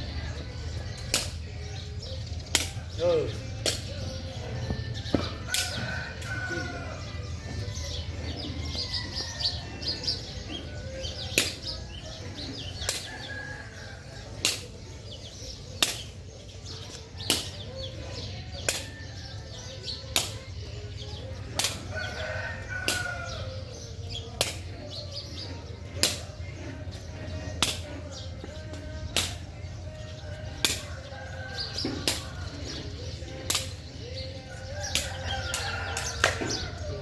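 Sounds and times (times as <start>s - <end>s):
sharp slaps: 1.0s - 1.5s, 2.5s - 2.9s, 3.6s - 4.0s, 11.3s - 11.7s, 12.8s - 13.1s, 14.4s - 14.8s, 15.8s - 16.2s, 17.2s - 17.7s, 18.6s - 19.0s, 20.1s - 20.5s, 21.6s - 21.9s, 24.3s - 24.7s, 26.0s - 26.4s, 27.6s - 27.9s, 29.1s - 29.5s, 30.6s - 30.9s, 32.0s - 32.4s, 33.4s - 33.9s, 34.8s - 36.7s.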